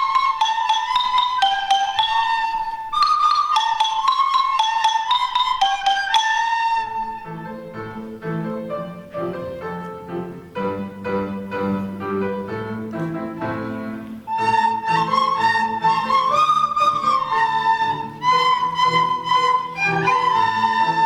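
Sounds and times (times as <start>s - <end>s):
mallet percussion notes: 0.0s - 8.1s, 13.0s - 21.0s
bright high melody: 0.0s - 9.6s, 14.3s - 21.0s.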